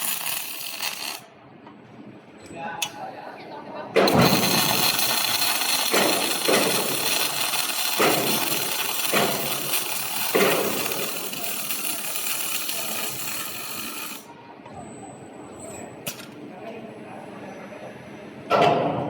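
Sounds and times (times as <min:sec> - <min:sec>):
welding arc crackling: 0:00.0 - 0:01.3, 0:04.1 - 0:14.3.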